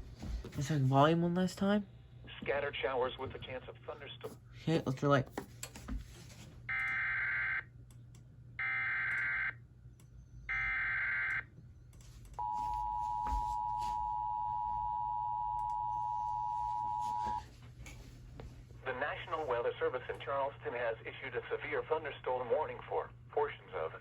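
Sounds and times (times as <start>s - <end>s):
two-tone attention signal: 12.4s - 17.4s.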